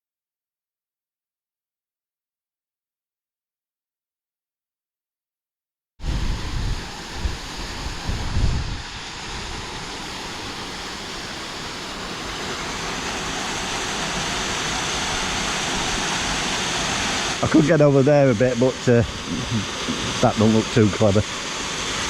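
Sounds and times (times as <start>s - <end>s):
wind buffeting microphone: 6.0s - 9.7s
waterfall rushing: 6.0s - 22.0s.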